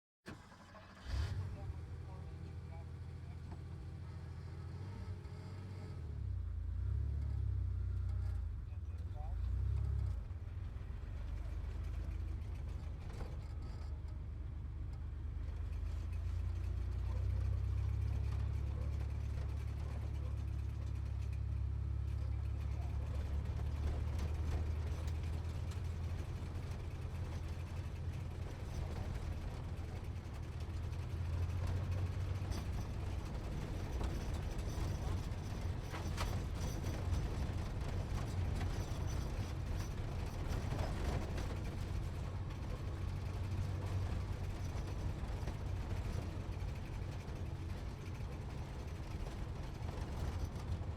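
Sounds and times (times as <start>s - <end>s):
sports car engine rumbling: 1.1s - 50.9s.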